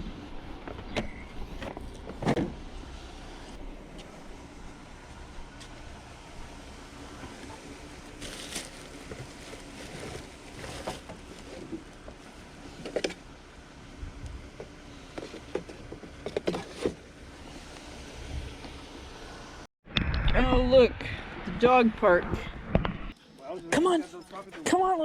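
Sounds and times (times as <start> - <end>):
vehicle rumble and hiss: 0.0 - 19.7.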